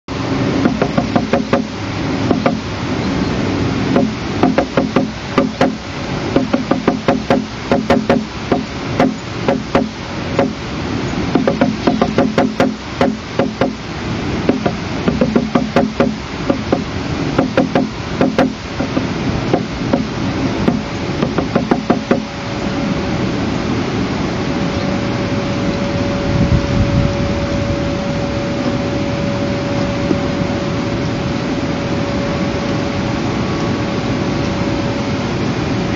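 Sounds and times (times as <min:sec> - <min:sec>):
steady background hiss: 0:00.1 - 0:35.9
woodpecker pecking wood: 0:00.6 - 0:02.7, 0:03.9 - 0:10.6, 0:11.3 - 0:13.8, 0:14.5 - 0:22.3.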